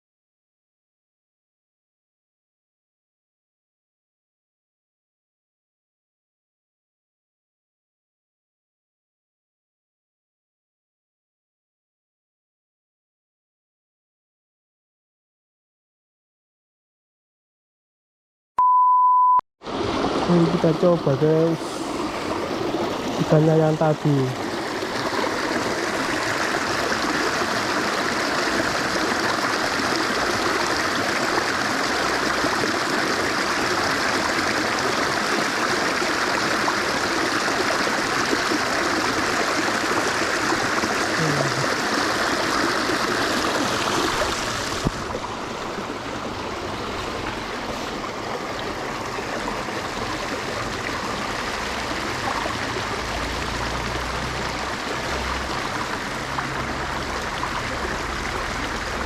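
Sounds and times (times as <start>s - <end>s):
stream flowing over rocks: 19.6s - 59.0s.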